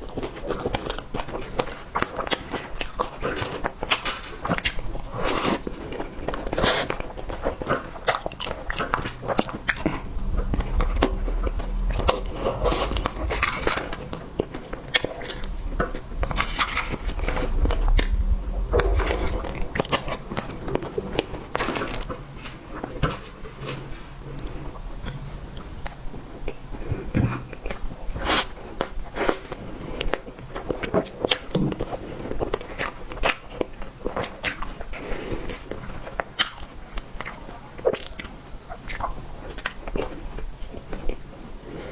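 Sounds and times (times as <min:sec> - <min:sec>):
low rumble: 0:08.7 - 0:21.6, 0:23.9 - 0:26.9.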